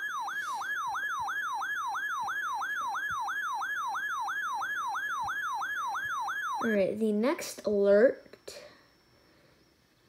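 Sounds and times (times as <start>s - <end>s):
electronic siren alarm: 0.0s - 7.0s.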